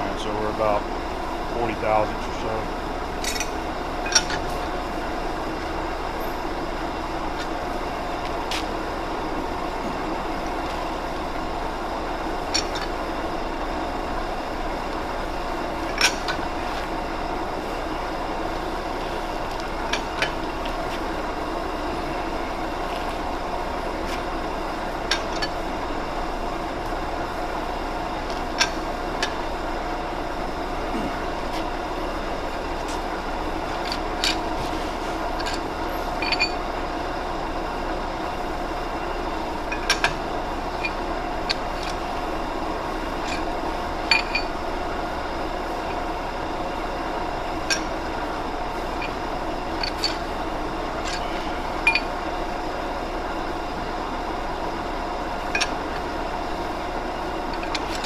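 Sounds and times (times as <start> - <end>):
lathe humming: 0.0 - 58.0.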